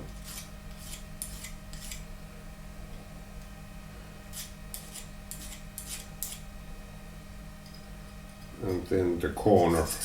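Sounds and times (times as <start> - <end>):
hand file rasping on metal: 0.2 - 2.0, 4.3 - 6.4, 9.7 - 10.0.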